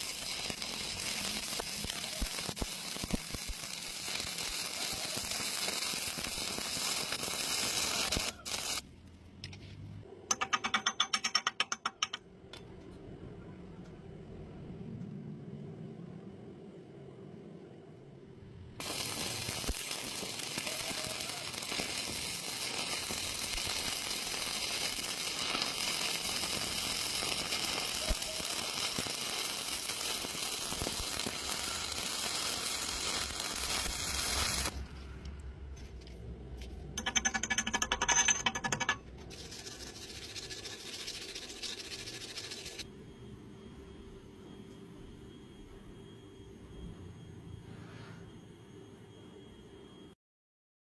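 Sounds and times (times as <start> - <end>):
electric arc welding crackling: 0.0 - 8.8, 18.8 - 34.8, 38.8 - 42.9.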